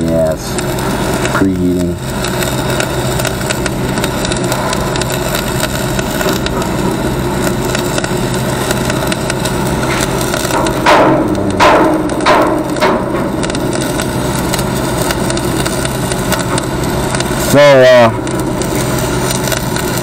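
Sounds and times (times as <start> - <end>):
low steady hum: 0.0 - 20.0
welding arc crackling: 0.0 - 20.0.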